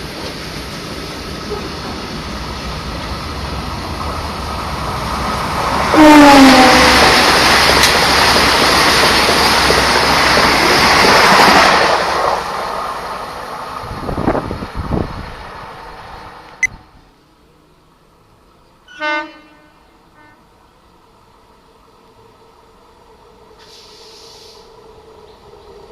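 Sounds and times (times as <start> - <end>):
train passing at speed: 0.0 - 25.9
train horn honk: 5.9 - 7.4, 18.9 - 20.5.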